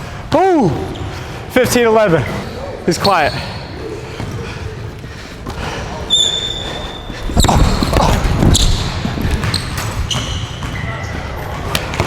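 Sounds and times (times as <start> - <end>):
sneakers squeaking on floor: 2.2 - 4.6, 5.4 - 12.0
basketball bouncing on hardwood: 7.3 - 10.8.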